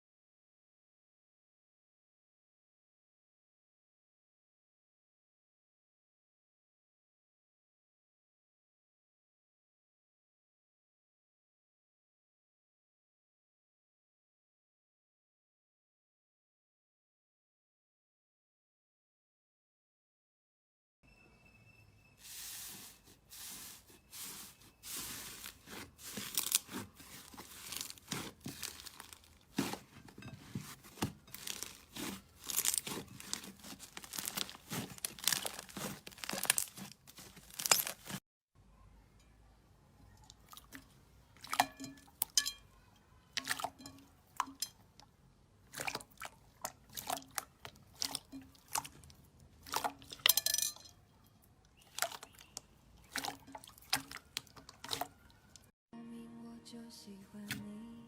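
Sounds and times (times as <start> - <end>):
slime squeezed crackling: 24.2 - 29.8, 30.9 - 38.2.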